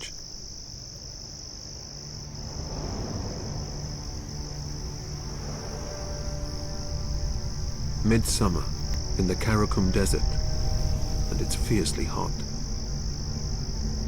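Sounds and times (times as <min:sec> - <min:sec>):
insects chirring: 0:00.0 - 0:14.0
soft music with held notes: 0:04.1 - 0:14.0.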